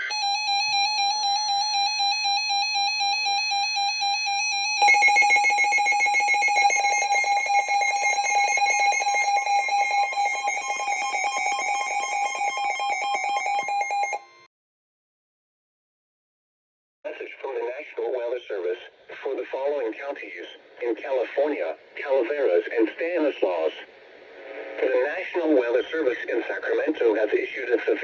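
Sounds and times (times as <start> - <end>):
rapidly pulsing alarm tone: 0.0 - 14.5
steady shrill alarm tone: 0.0 - 14.5.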